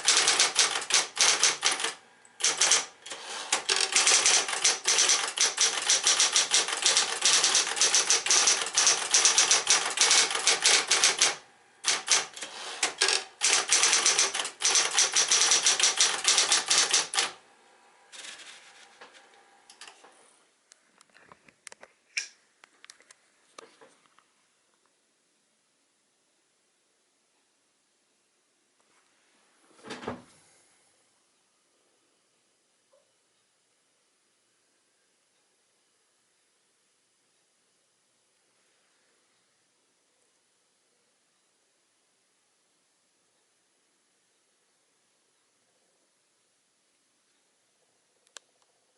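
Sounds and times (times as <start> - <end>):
electric typewriter typing: 0.0 - 17.4, 18.1 - 18.6.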